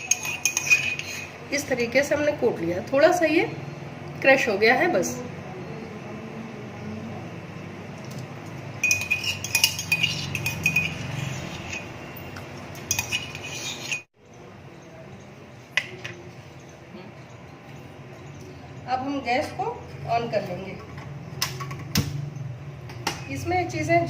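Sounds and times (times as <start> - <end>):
utensils clinking on metal pot: 0.0 - 1.4, 8.0 - 14.1.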